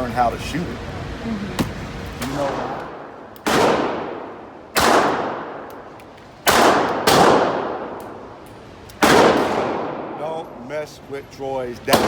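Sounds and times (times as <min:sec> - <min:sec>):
pistol shots echoing: 0:02.8 - 0:08.2, 0:09.0 - 0:10.4.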